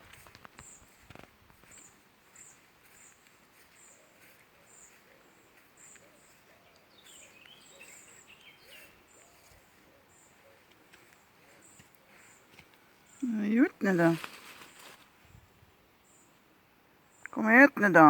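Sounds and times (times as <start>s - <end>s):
bird twittering: 1.7s - 10.6s.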